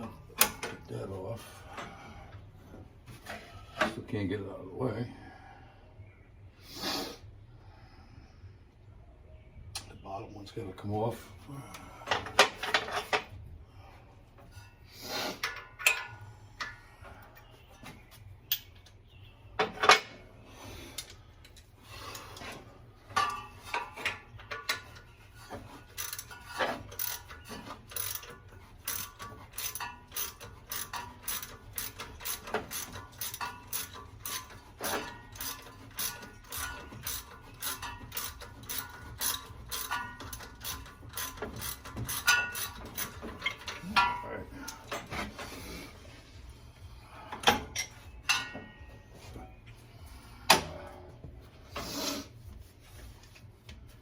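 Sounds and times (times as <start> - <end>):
ratchet wrench clicking: 25.9 - 43.8.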